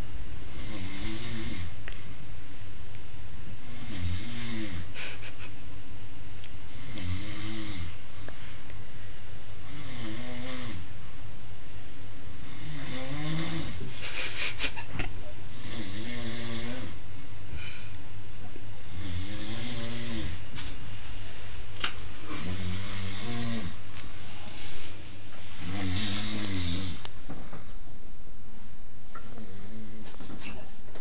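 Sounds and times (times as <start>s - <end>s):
person snoring: 0.4s - 1.8s, 3.5s - 5.0s, 6.6s - 8.0s, 9.6s - 10.9s, 12.3s - 13.9s, 15.4s - 17.0s, 18.8s - 20.4s, 22.3s - 23.8s, 25.6s - 27.1s, 29.2s - 30.2s.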